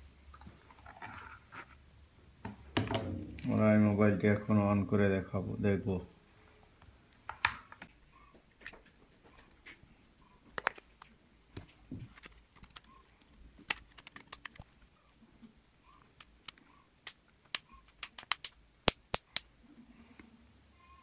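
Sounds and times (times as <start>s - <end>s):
plastic clicks of phone handling: 10.5s - 11.1s.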